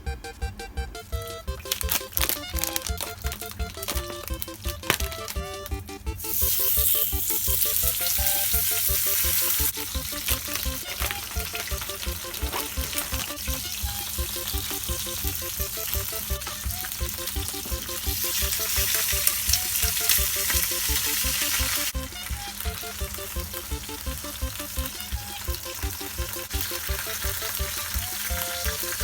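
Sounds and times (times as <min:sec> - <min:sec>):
food sizzling in a pan: 0:06.2 - 0:22.0.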